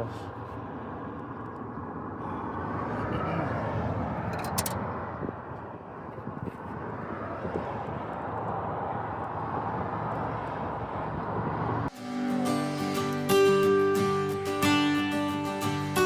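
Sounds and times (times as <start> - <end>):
road traffic rumble: 0.0 - 16.0
acoustic guitar music: 11.9 - 16.0.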